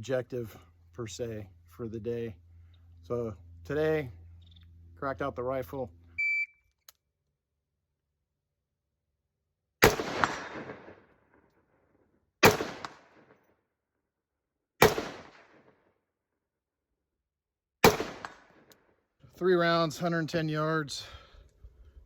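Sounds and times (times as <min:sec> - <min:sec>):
rifle shots with echo: 0:09.8 - 0:11.2, 0:12.4 - 0:13.4, 0:14.8 - 0:15.8, 0:17.8 - 0:18.7.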